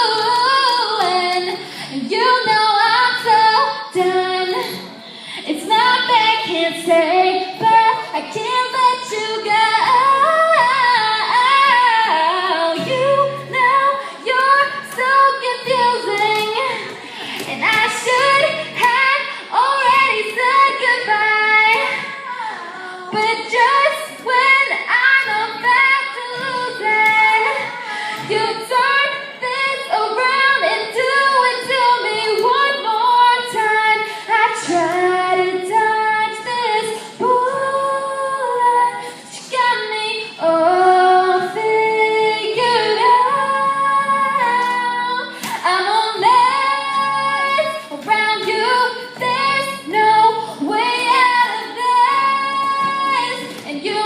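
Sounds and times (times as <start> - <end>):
women singing in harmony: 0.0 - 54.0.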